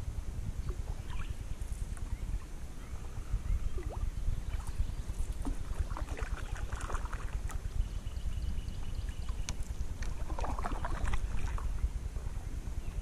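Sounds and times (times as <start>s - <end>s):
wind rumble on microphone: 0.0s - 13.0s
paddle splashing in water: 5.4s - 7.7s, 10.0s - 11.8s.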